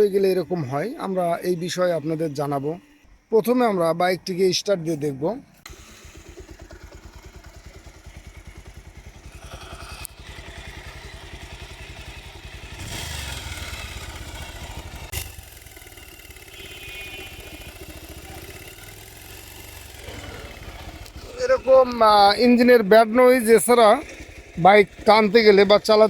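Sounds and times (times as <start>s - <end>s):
motorcycle engine running and revving: 5.6s - 26.0s.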